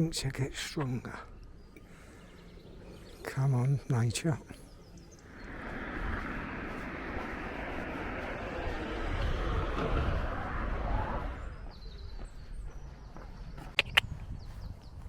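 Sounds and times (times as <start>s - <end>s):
passing vehicle rushing: 5.2s - 11.7s
sharp clicks: 13.8s - 14.0s.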